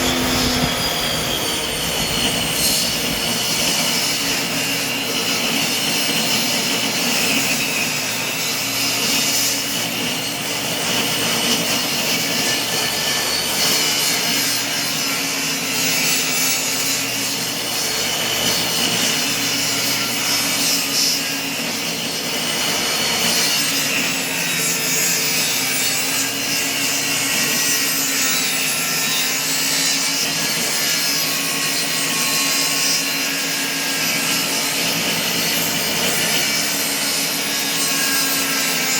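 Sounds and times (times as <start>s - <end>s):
table saw cutting wood: 0.0s - 38.9s.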